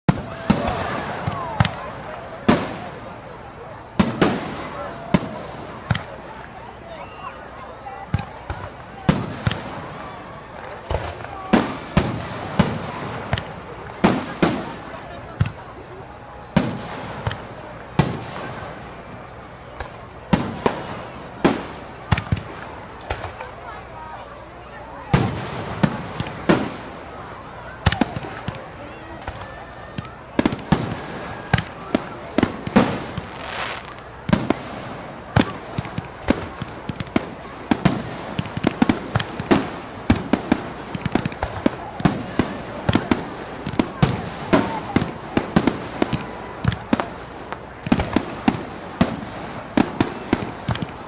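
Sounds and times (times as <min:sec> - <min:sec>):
fireworks bangs with echo: 0:00.1 - 0:51.0
background hiss: 0:30.1 - 0:51.0.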